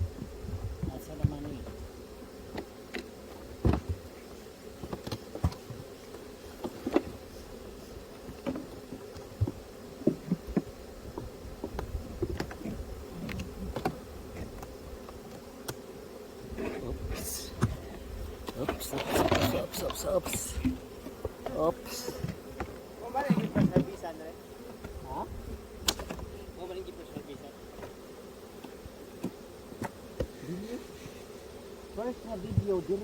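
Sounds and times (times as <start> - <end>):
bees buzzing: 0.0 - 33.0
sharp clicks and knocks: 25.8 - 26.2.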